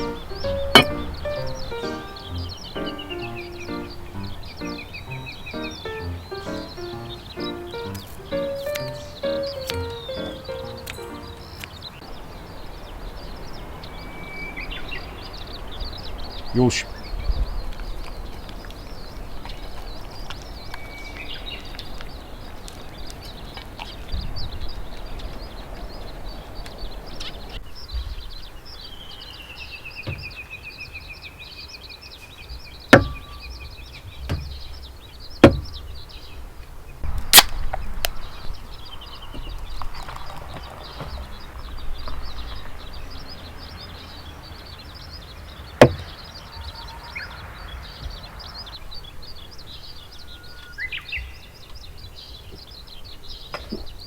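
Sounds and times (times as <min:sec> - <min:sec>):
bird warbling call: 0:00.0 - 0:11.8.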